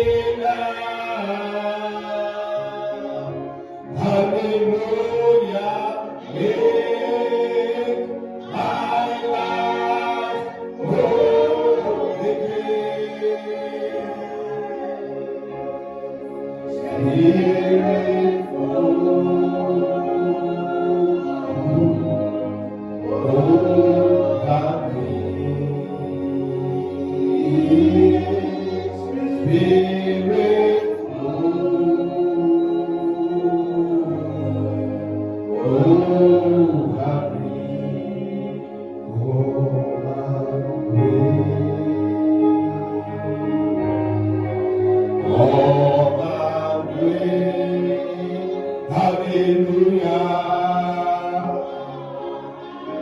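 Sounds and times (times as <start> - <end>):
held keyboard chords: 0.0 - 53.0
musical accompaniment: 0.0 - 53.0
voices singing worship song: 0.0 - 53.0.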